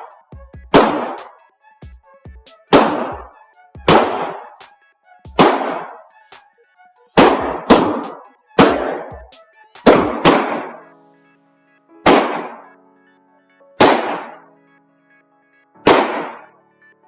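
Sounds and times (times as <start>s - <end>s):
pistol shots with echo: 0.7s - 1.2s, 2.7s - 3.3s, 3.9s - 4.5s, 5.4s - 6.0s, 7.2s - 9.2s, 9.8s - 10.8s, 12.0s - 12.7s, 13.8s - 14.4s, 15.8s - 16.5s.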